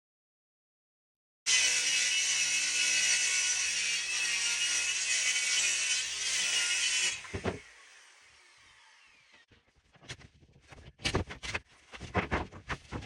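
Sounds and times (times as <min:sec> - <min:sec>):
power saw cutting wood: 0:01.5 - 0:09.5.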